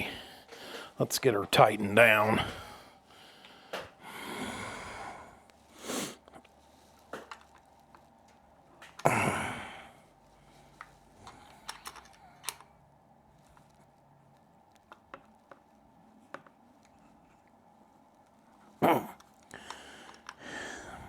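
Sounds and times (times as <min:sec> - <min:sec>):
hand tools clicking and tapping: 0:10.8 - 0:12.6, 0:14.7 - 0:15.7, 0:16.3 - 0:17.0, 0:19.2 - 0:20.5.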